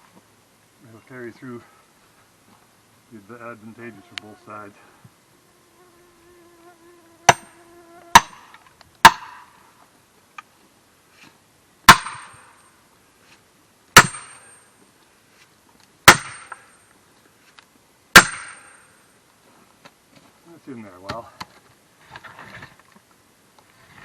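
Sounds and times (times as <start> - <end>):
fly buzzing: 3.8 - 8.3
sledgehammer striking steel wedge: 8.2 - 8.4, 9.0 - 9.5, 11.9 - 12.5, 14.0 - 14.6, 16.0 - 16.7, 18.2 - 18.8.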